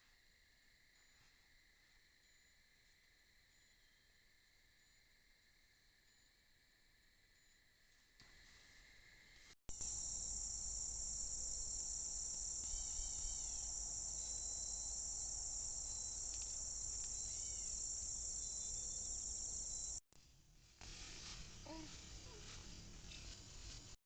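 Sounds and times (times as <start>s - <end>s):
insects chorus: 8.4s - 20.0s.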